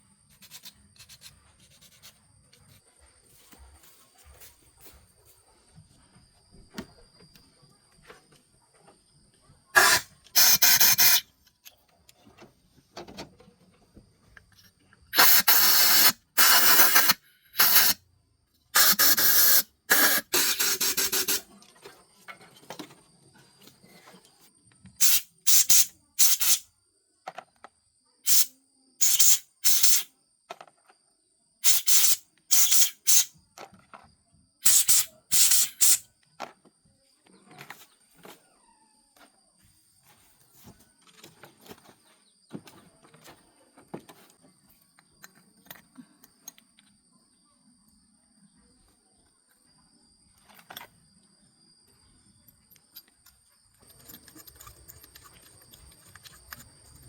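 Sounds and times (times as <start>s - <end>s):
spray hissing from a nozzle: 9.8s - 11.2s, 15.2s - 18.0s, 18.8s - 21.5s, 25.0s - 26.6s, 28.3s - 30.1s, 31.6s - 33.3s, 34.6s - 36.0s.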